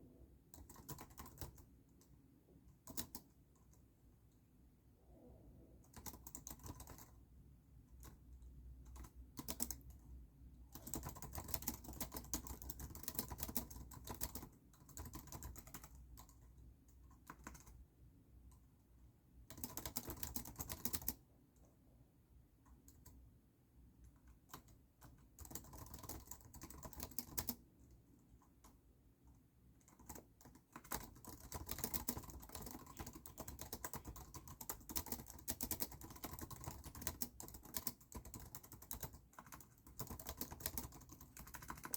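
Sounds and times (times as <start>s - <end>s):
computer keyboard typing: 0.5s - 3.8s, 5.8s - 7.2s, 8.0s - 10.1s, 10.7s - 17.8s, 19.4s - 21.2s, 22.7s - 23.2s, 24.0s - 27.6s, 28.3s - 41.9s.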